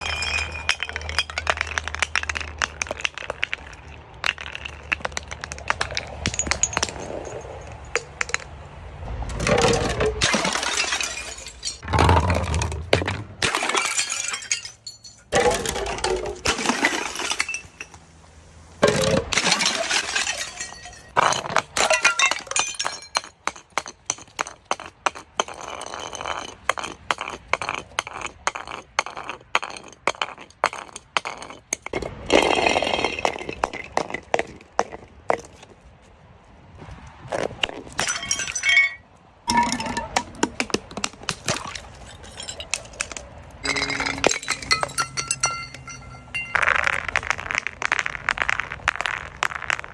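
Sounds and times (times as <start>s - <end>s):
glass bottles crushing and breaking: 0.0s - 8.5s, 9.4s - 18.0s, 18.8s - 34.3s, 37.9s - 49.9s.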